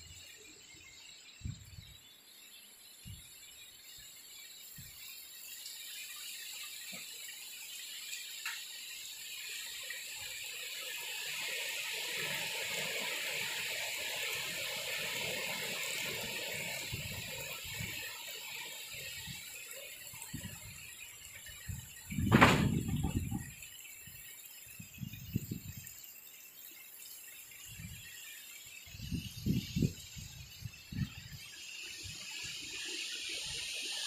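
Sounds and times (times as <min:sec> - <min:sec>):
wind gust rushing through trees: 0:20.2 - 0:23.6, 0:28.8 - 0:34.0.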